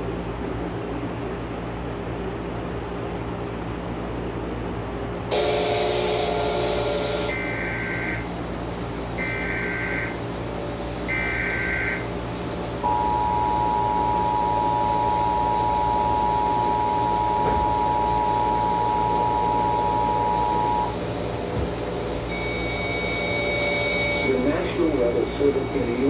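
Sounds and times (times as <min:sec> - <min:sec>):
low steady hum: 0:00.0 - 0:26.0
two-tone attention signal: 0:12.8 - 0:21.0, 0:22.3 - 0:26.0
short data burst tones: 0:12.9 - 0:21.0, 0:22.3 - 0:26.0.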